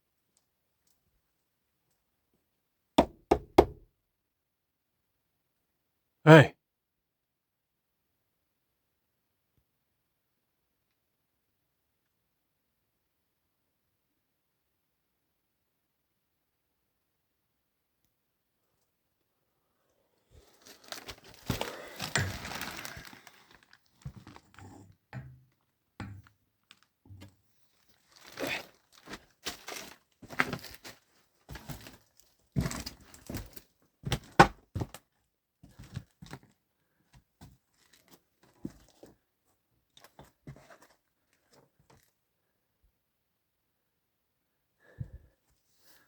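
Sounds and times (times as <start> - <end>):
rustling and crinkling: 20.3 - 25.7, 26.6 - 42.2.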